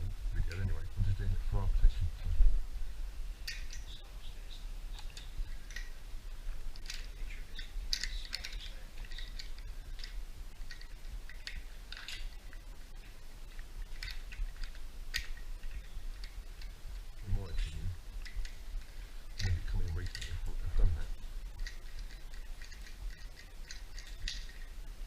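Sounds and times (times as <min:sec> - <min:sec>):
small clicks and crunches: 0:19.4 - 0:24.7.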